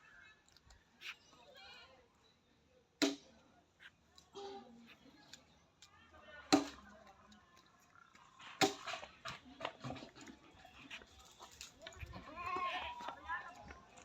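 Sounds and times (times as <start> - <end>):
goats calling: 10.0 - 13.8.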